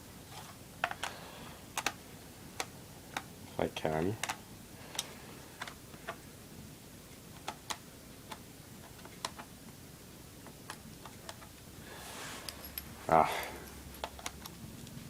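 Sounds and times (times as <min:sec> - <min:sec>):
soft rustle: 0:11.8 - 0:13.8.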